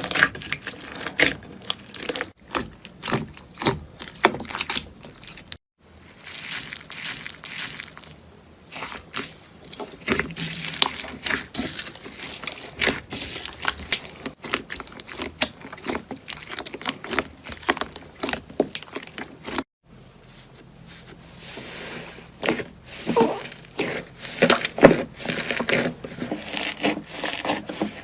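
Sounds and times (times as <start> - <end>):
slime crackling and popping: 10.0 - 19.6.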